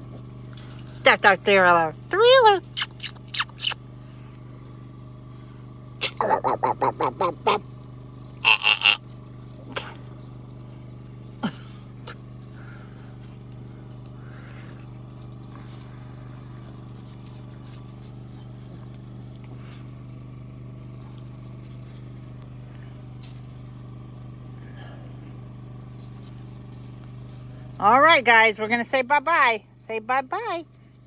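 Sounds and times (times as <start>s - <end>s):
faint clicks and rustles: 0.0s - 1.2s, 7.6s - 27.9s
low machine hum: 0.0s - 31.0s
puppy squeak: 2.4s - 3.8s.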